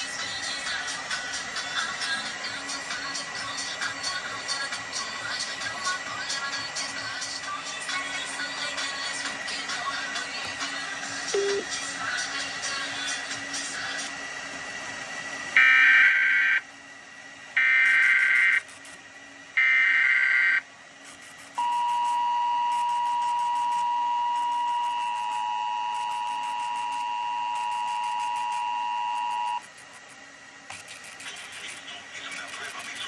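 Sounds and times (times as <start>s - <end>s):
two-tone attention signal: 11.3s - 11.7s, 21.6s - 29.6s.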